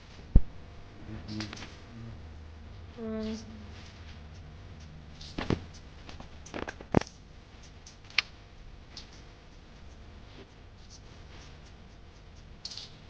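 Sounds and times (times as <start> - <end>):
clicks and taps on wiring: 4.8 - 9.2.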